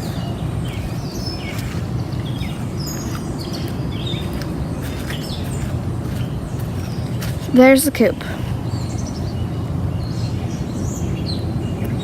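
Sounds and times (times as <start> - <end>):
low outdoor rumble: 0.0 - 11.8
birds chirping: 0.0 - 12.0.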